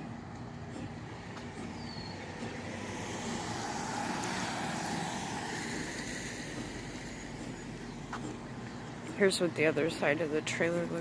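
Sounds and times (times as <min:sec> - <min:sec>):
machinery humming: 0:00.0 - 0:11.0.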